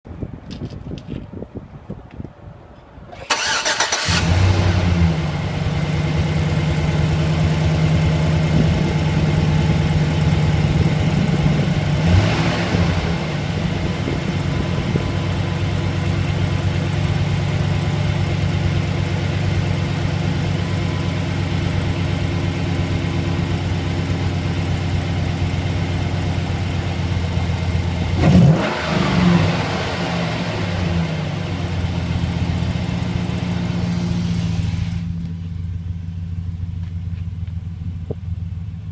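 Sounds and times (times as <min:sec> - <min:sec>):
engine cranking: 0:03.2 - 0:04.3
engine revving: 0:03.2 - 0:14.2, 0:28.0 - 0:31.9.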